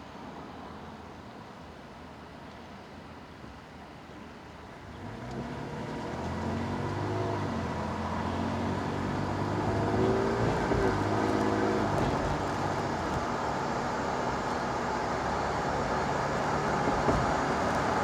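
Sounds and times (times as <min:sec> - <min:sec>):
vehicle road and drivetrain noise: 0:04.9 - 0:18.0
rear axle whine: 0:09.1 - 0:18.0.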